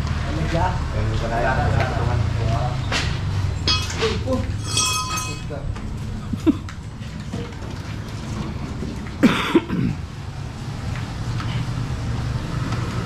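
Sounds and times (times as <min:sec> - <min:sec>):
person coughing: 0:09.2 - 0:10.0.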